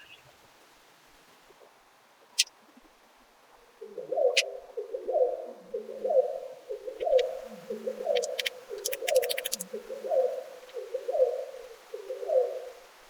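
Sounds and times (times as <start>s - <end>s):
dove cooing: 3.6s - 13.0s.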